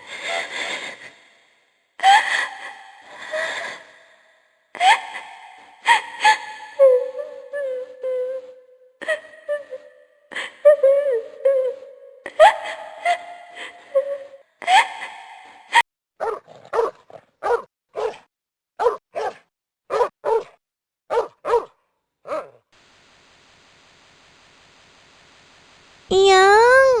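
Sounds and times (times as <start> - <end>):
dog yelping and barking: 16.2 - 18.2, 18.8 - 21.7, 22.3 - 22.6
faint hiss: 22.8 - 27.0.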